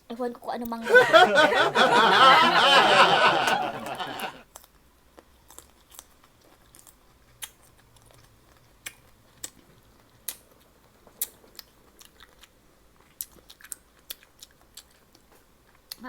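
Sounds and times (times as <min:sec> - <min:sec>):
chewing and lip smacks: 0:11.2 - 0:16.0.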